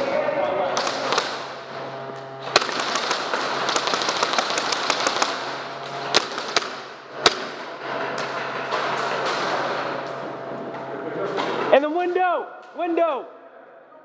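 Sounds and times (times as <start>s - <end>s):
airsoft gun volley: 0.7s - 1.5s, 2.5s - 5.5s.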